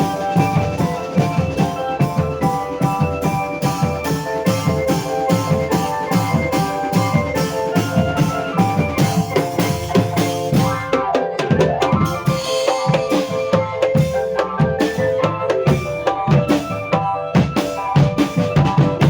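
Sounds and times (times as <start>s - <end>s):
sustained melodic tones: 0.0s - 18.9s
fast drum beat: 0.0s - 19.0s.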